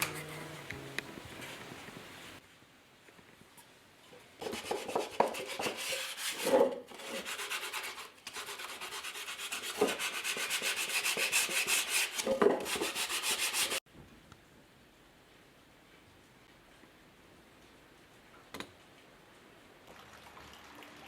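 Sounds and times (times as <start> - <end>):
rhythmic scraping on hard surface: 0.0 - 2.4, 4.4 - 13.8.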